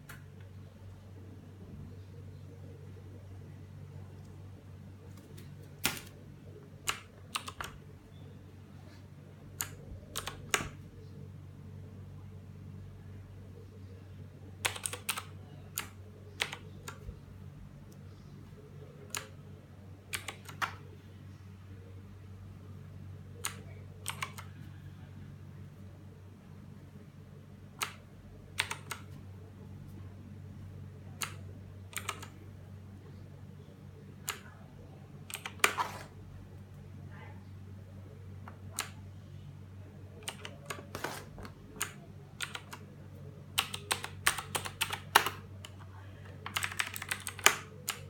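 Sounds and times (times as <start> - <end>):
steady low hum: 0.0 - 48.0
mechanical keyboard keys clicking: 6.8 - 7.8, 9.6 - 10.8, 14.6 - 17.0, 19.1 - 19.3, 20.1 - 20.8, 23.4 - 24.5, 27.8 - 28.0, 28.6 - 29.1, 31.2 - 32.4, 35.3 - 36.1, 38.5 - 39.0, 40.2 - 42.8, 43.6 - 48.0.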